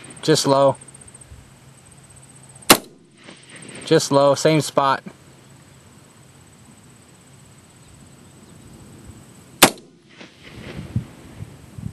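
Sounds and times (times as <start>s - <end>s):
rifle shot: 2.7s - 4.0s, 9.6s - 10.9s.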